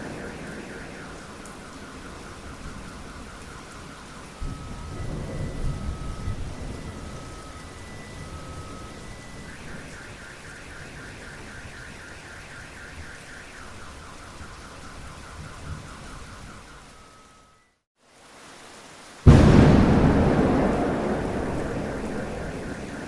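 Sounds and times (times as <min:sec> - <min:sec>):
low thunder rumble: 0:00.0 - 0:03.6, 0:04.4 - 0:09.9, 0:19.3 - 0:23.0
steady rain: 0:00.0 - 0:23.0.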